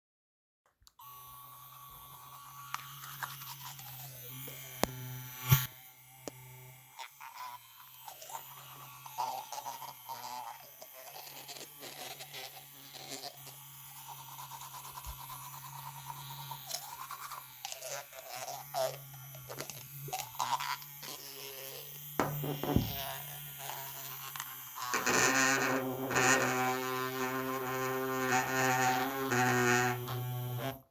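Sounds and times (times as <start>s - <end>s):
electric toothbrush buzzing: 0.9s - 30.9s
toothbrush scrubbing: 2.1s - 4.2s, 7.0s - 21.2s.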